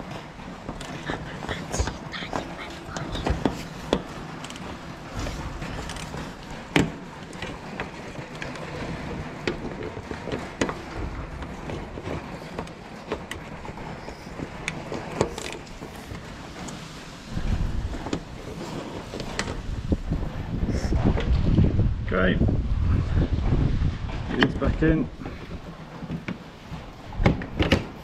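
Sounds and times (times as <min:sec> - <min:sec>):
clicks and knocks of hand work: 0:00.0 - 0:17.0
wind buffeting microphone: 0:00.0 - 0:28.0.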